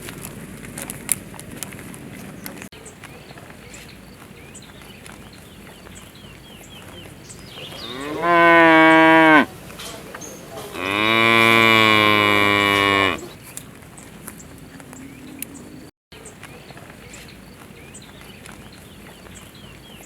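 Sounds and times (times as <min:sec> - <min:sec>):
cow mooing: 0:07.8 - 0:09.5, 0:10.7 - 0:13.4.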